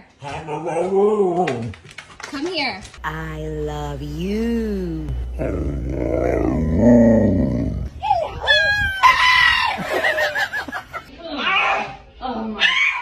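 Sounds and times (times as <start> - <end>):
dog moaning and yowling: 5.2 - 9.8.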